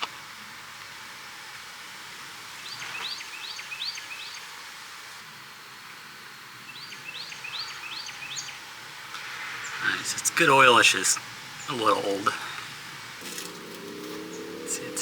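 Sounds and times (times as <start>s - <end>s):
steady outdoor hiss: 0.0s - 15.0s
songbird singing: 2.6s - 4.4s, 6.6s - 8.6s, 9.6s - 15.0s.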